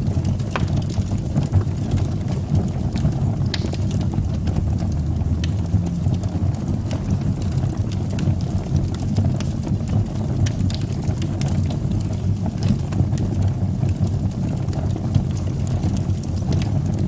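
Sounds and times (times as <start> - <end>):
fire burning low rumble: 0.0 - 17.0
fire crackles and pops: 0.0 - 17.0.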